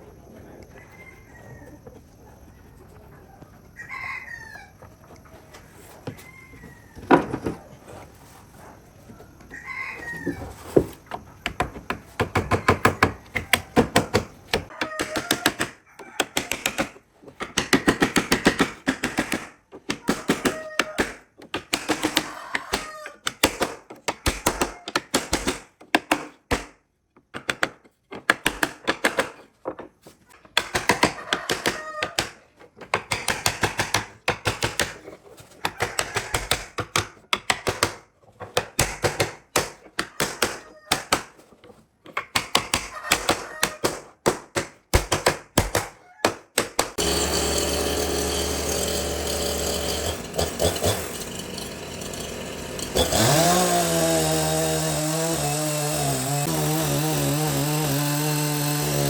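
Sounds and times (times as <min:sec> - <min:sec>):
chickens clucking: 0:00.0 - 0:11.4, 0:31.2 - 0:32.1
rooster crowing: 0:00.5 - 0:05.0, 0:05.8 - 0:07.3, 0:09.1 - 0:10.7, 0:12.4 - 0:13.7, 0:14.6 - 0:16.6, 0:20.4 - 0:21.0, 0:22.2 - 0:23.2, 0:31.1 - 0:32.2, 0:35.6 - 0:36.7, 0:42.9 - 0:43.8.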